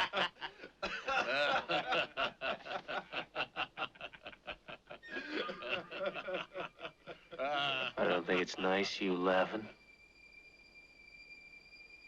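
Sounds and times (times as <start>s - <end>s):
men laughing: 0.0s - 8.8s.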